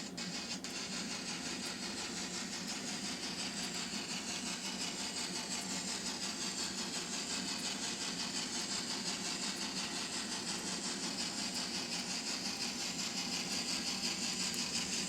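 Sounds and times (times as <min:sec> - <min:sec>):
steam engine sound from small speaker: 0:00.0 - 0:15.0.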